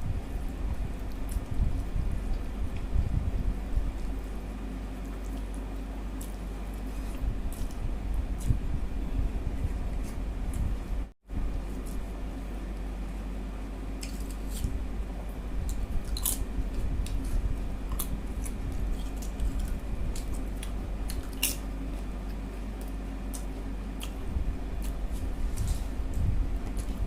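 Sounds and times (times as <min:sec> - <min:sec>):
steady low hum: 0:00.0 - 0:27.0
person chewing food: 0:04.9 - 0:08.6, 0:15.6 - 0:24.2, 0:24.8 - 0:27.0.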